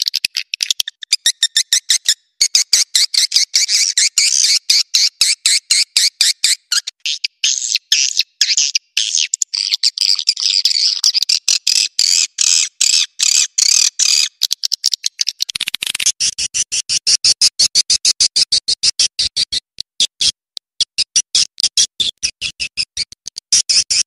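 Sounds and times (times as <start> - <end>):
swiftlet chattering twitters: 7.1 - 17.8, 19.2 - 24.0
rapid sharp chirps: 9.6 - 24.0.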